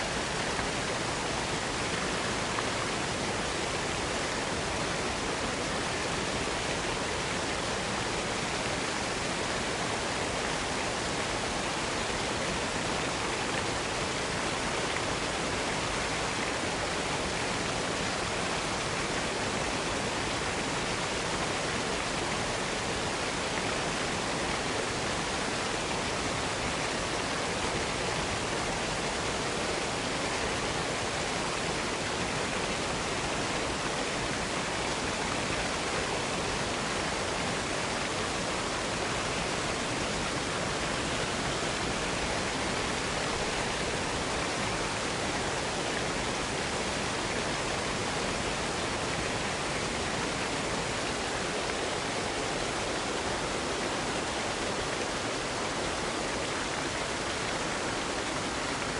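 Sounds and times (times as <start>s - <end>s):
waterfall rushing: 0.0s - 58.9s.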